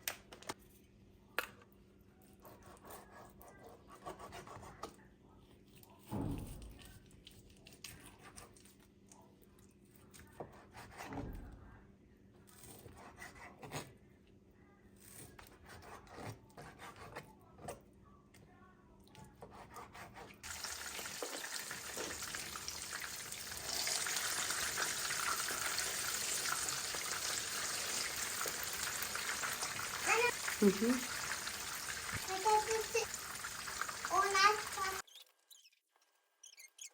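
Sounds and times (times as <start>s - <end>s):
food sizzling in hot oil: 20.4s - 35.0s.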